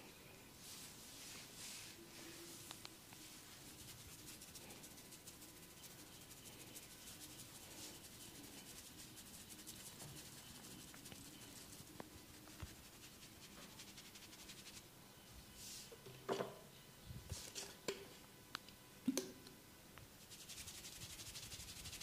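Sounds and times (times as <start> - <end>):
hands rubbing and scratching: 0.7 - 14.8, 20.2 - 22.0.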